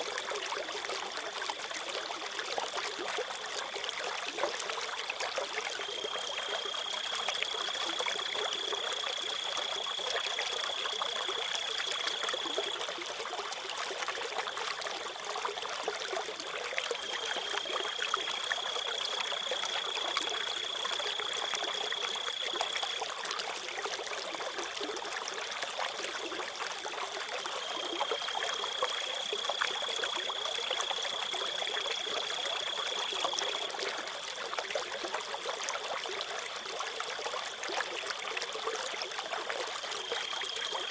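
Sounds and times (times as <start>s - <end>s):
stream water trickling: 0.0s - 40.9s
crickets trilling: 5.8s - 13.0s, 17.0s - 23.1s, 27.4s - 33.8s, 40.0s - 40.9s.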